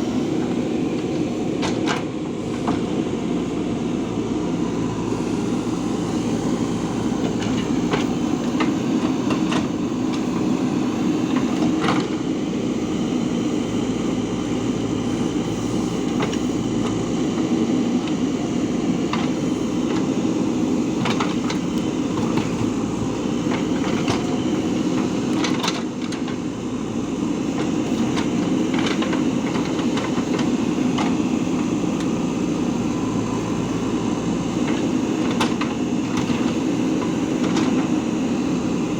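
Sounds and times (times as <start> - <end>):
diesel engine running: 0.0 - 38.9.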